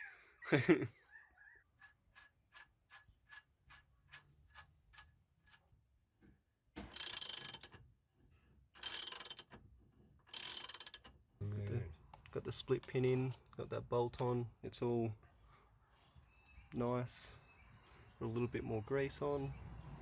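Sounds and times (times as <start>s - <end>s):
socket ratchet clicking: 6.9s - 7.8s, 8.8s - 9.6s, 10.3s - 11.1s.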